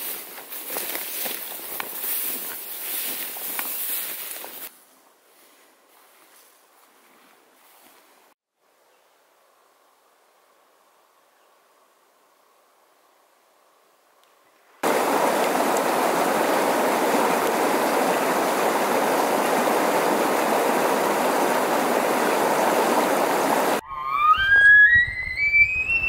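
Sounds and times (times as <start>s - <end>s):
rushing mountain stream: 14.8s - 23.8s.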